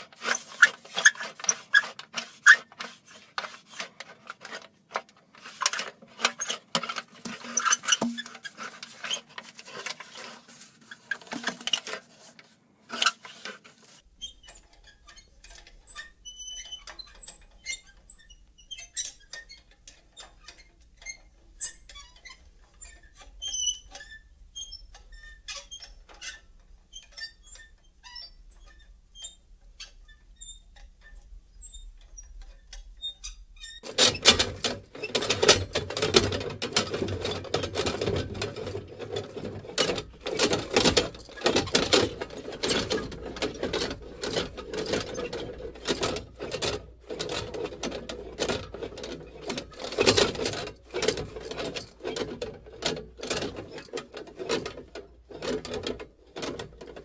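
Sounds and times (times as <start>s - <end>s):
faint clicks and ticks: 14.0s - 57.0s
metal lantern squeaking and rattling: 14.0s - 57.0s.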